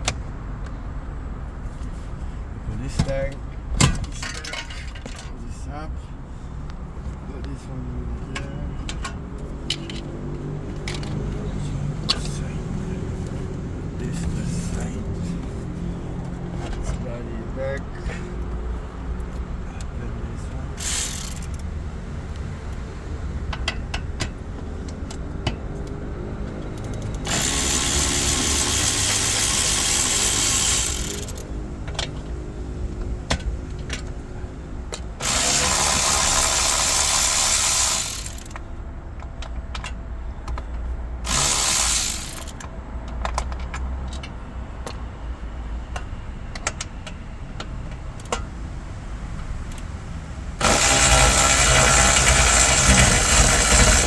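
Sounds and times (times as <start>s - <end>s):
hand tools clicking and knocking: 3.8s - 5.4s, 20.8s - 21.7s, 23.5s - 26.0s, 26.6s - 32.3s, 34.9s - 45.1s, 45.9s - 48.5s, 49.4s - 50.0s, 50.6s - 54.0s
ratchet clicking: 20.8s - 21.7s, 26.7s - 32.2s, 34.9s - 38.7s, 41.2s - 44.3s, 48.0s - 48.5s, 49.4s - 50.0s, 50.6s - 54.0s.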